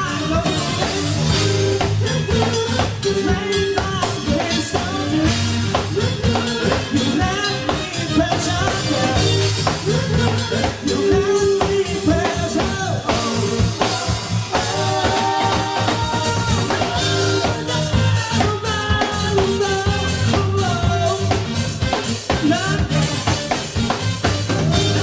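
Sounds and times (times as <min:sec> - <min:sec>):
drum kit beat: 0:00.0 - 0:25.0
live band music: 0:00.0 - 0:25.0.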